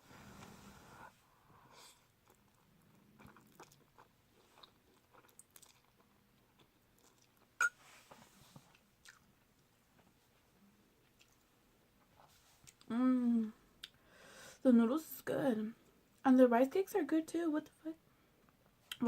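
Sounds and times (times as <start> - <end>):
faint chewing: 1.7 - 7.7, 8.5 - 10.1, 11.0 - 12.9
wet mouth clicks: 13.8 - 14.0.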